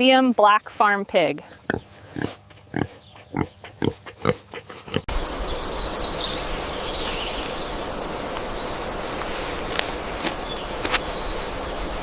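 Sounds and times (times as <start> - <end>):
pig grunting: 1.6 - 5.1
outdoor background hiss: 4.0 - 12.0.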